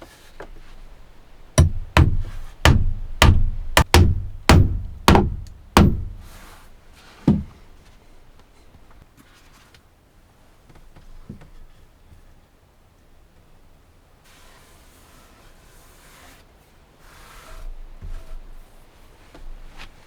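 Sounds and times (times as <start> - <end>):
hand tool knocking on wood: 1.6 - 6.5, 7.3 - 7.6.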